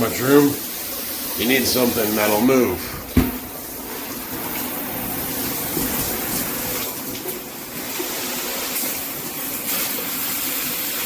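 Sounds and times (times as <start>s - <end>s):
shower head spraying water: 0.0s - 11.0s
short knock: 2.9s - 3.5s.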